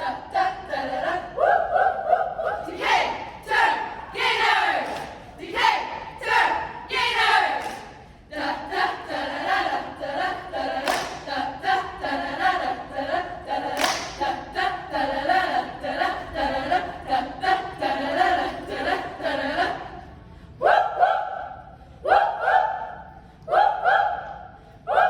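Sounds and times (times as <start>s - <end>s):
choir singing a cappella: 0.0s - 25.0s
hand claps: 4.8s - 5.2s, 7.6s - 8.0s, 10.8s - 11.3s, 13.7s - 14.3s.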